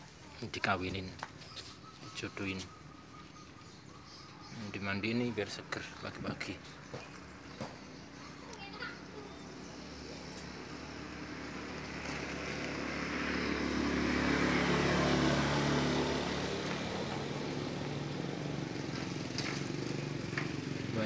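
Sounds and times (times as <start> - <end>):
vehicle engine passing: 0.6 - 21.0
tyre noise on road: 11.0 - 21.0.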